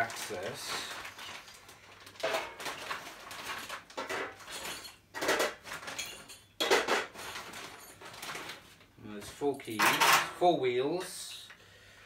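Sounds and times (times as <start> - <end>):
metal hardware clattering: 4.0 - 8.0, 9.6 - 10.4.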